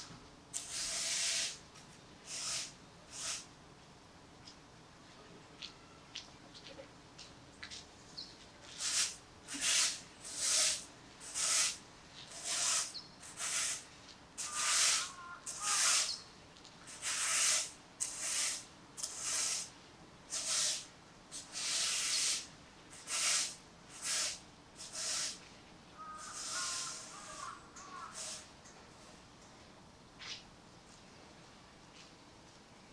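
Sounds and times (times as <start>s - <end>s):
broom sweeping: 0.6s - 1.6s, 2.2s - 3.5s, 8.6s - 16.2s, 16.9s - 19.7s, 20.3s - 25.5s, 26.2s - 27.4s, 28.1s - 28.5s.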